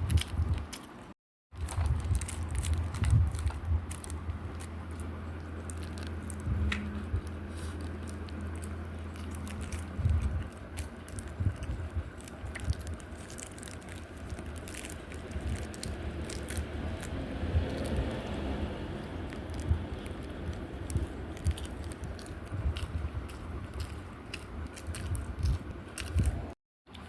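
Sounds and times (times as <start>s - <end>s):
person biting and chewing food: 0.0s - 26.6s
steady low hum: 0.0s - 27.0s.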